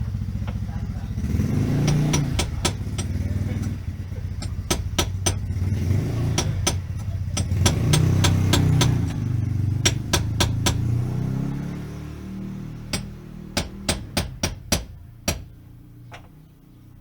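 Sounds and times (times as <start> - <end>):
car engine running: 0.0 - 16.8
sharp clicks: 1.8 - 3.8, 6.4 - 9.3.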